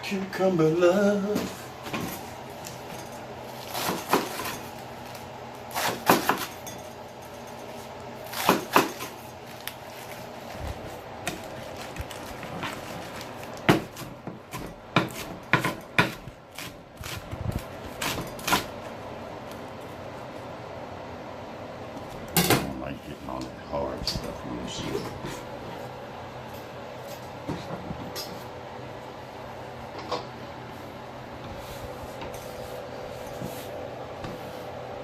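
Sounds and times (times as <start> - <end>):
utensils and dishes clinking: 2.0 - 4.8, 5.8 - 9.5.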